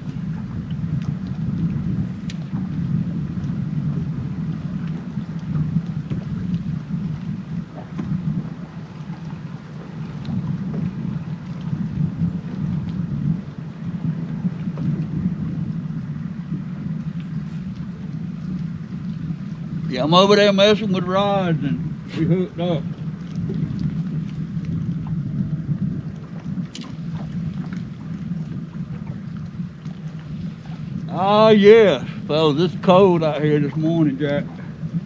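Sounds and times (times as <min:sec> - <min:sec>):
wind buffeting microphone: 0:00.0 - 0:35.0.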